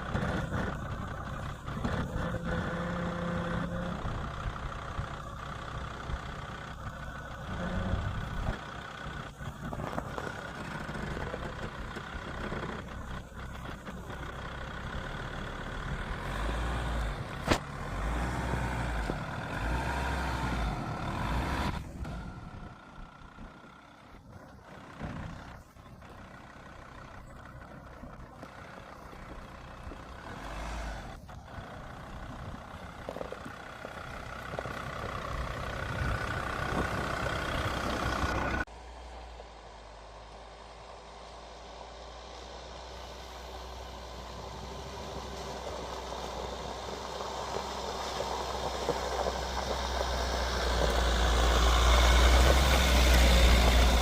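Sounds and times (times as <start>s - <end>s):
body and suspension noise: 0.0s - 38.8s
diesel engine rumble: 0.0s - 54.0s.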